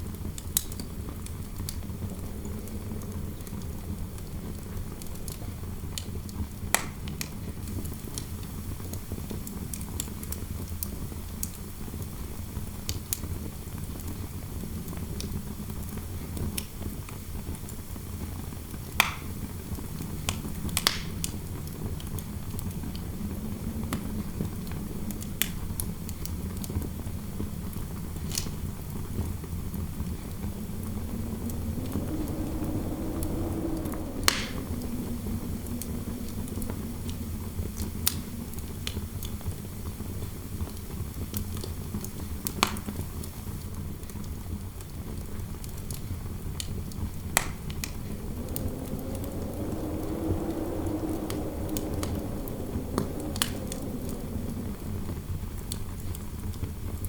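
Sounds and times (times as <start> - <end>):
fire crackling and popping: 18.2 - 41.7, 46.6 - 56.6
wind howling: 18.8 - 40.9, 46.2 - 57.0.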